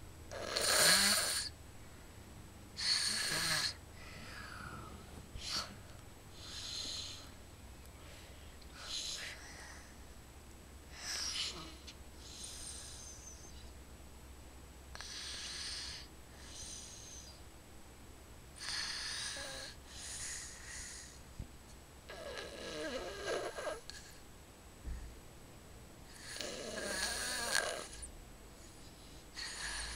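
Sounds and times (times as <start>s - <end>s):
person snoring: 0.3s - 1.5s, 2.8s - 5.8s, 6.4s - 7.4s, 10.9s - 13.2s, 18.6s - 21.1s, 22.1s - 24.1s, 26.1s - 28.1s, 29.3s - 29.9s
rattling snore: 0.3s - 1.5s, 2.8s - 5.7s, 6.4s - 7.3s, 22.1s - 24.0s, 26.1s - 28.1s, 29.3s - 29.9s.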